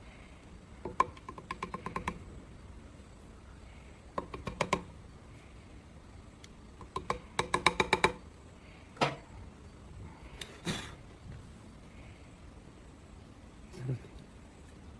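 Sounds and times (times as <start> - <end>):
hard objects clicking and knocking: 0.8 - 2.2, 4.1 - 5.0, 6.8 - 8.2.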